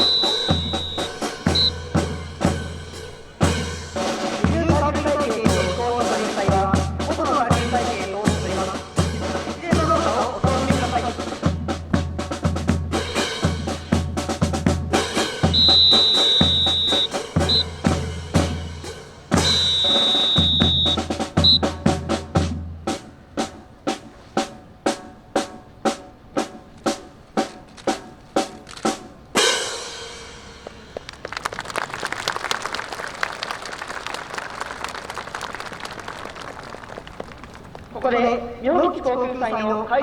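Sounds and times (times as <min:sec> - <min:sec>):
drill whistle blasts: 0:00.0 - 0:03.3, 0:15.4 - 0:18.0, 0:19.3 - 0:21.8
drum tapping marching cadence: 0:00.0 - 0:40.0
applause: 0:31.0 - 0:38.4.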